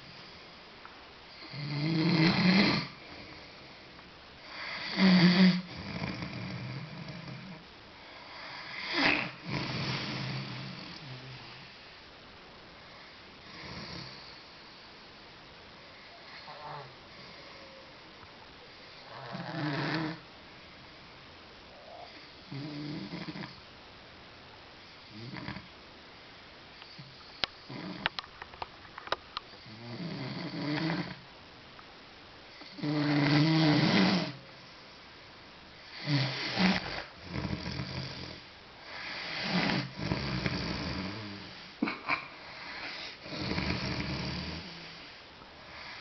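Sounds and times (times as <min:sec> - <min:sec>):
pet snoring: 0:01.3 - 0:03.6, 0:04.4 - 0:11.8, 0:13.4 - 0:14.8, 0:16.0 - 0:18.0, 0:18.8 - 0:20.2, 0:21.8 - 0:23.6, 0:25.0 - 0:25.7, 0:26.8 - 0:28.2, 0:29.6 - 0:31.2, 0:32.6 - 0:34.8, 0:35.8 - 0:46.0.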